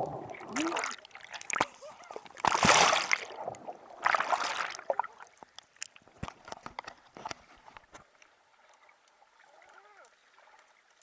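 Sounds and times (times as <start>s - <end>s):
sea wave splashing: 0.0s - 5.1s
small clicks and gurgles: 0.0s - 11.0s.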